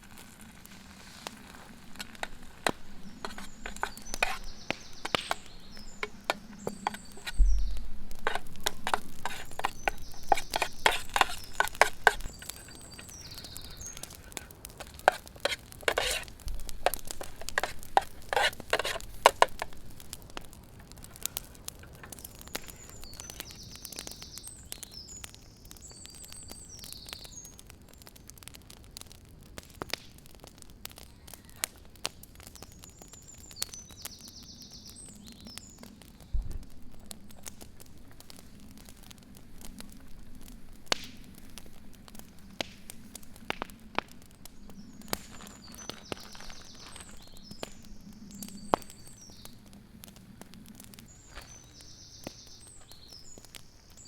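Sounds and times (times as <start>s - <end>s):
camp cooking utensils clinking: 1.2s - 20.5s
bird chirping: 2.0s - 20.3s, 32.8s - 36.4s, 44.6s - 49.6s, 51.0s - 54.0s.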